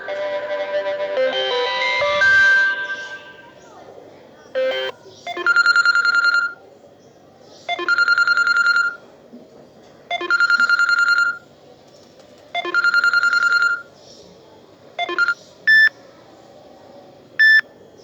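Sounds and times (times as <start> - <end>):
phone ringtone: 0.0 - 3.6, 4.6 - 6.6, 7.7 - 9.0, 10.1 - 11.4, 12.6 - 13.8, 15.0 - 15.9.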